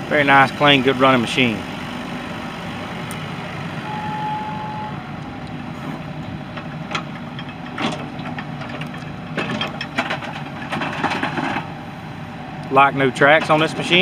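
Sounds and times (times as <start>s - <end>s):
excavator diesel engine idling: 0.0s - 14.0s
steady beep: 3.8s - 5.1s.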